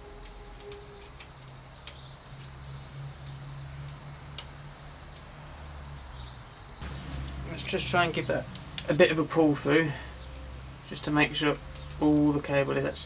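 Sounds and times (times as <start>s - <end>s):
steady low hum: 6.8s - 11.0s.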